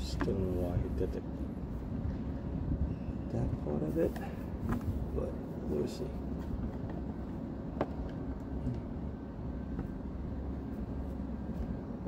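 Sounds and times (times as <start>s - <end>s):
low background rumble: 0.0s - 12.0s.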